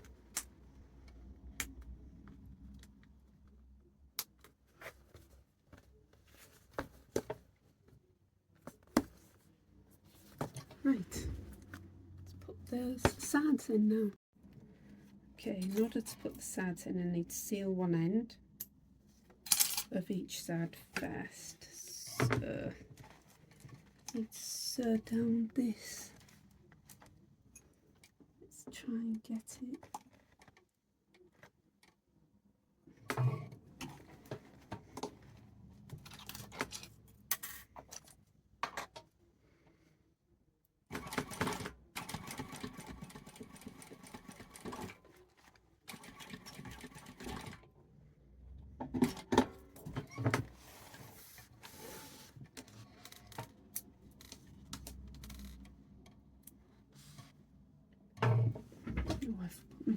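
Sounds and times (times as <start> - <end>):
sewing machine stitching: 40.9 - 45.0, 45.9 - 47.6.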